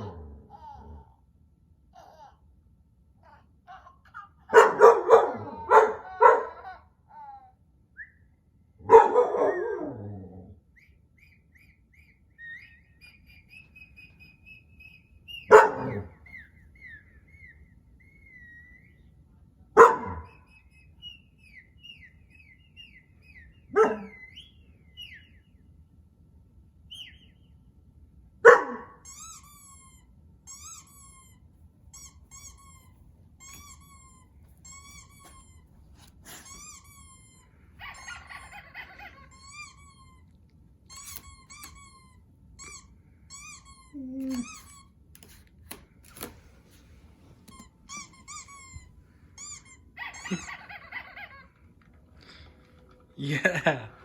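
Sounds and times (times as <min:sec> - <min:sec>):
dog barking: 0:04.4 - 0:06.8, 0:08.8 - 0:10.0, 0:15.4 - 0:16.2, 0:19.8 - 0:20.4, 0:23.7 - 0:24.3, 0:28.4 - 0:29.0
high wavering chirps and whistles: 0:10.8 - 0:19.3, 0:20.2 - 0:25.6, 0:26.9 - 0:27.6.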